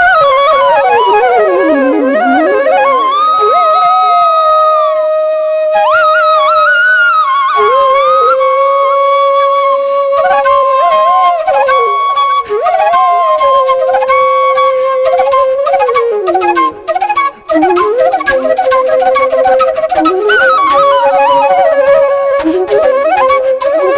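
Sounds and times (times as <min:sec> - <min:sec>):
flute playing slow melody: 0:00.0 - 0:23.9
sustained high drone note: 0:01.0 - 0:03.6.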